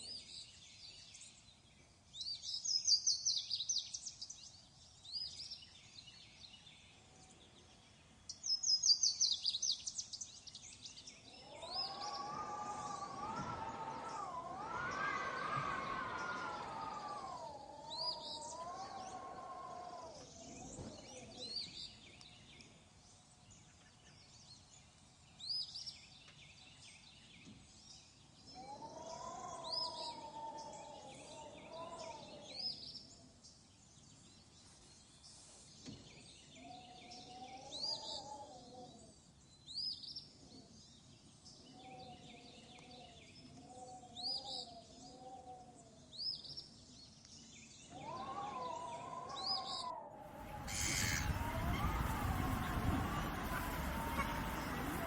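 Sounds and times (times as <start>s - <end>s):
small birds chirping: 0.0s - 24.7s, 40.8s - 55.0s.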